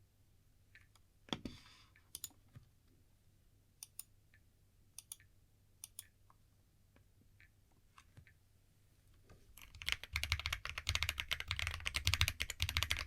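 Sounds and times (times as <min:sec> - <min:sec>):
mechanical keyboard keystrokes: 0:09.6 - 0:13.0.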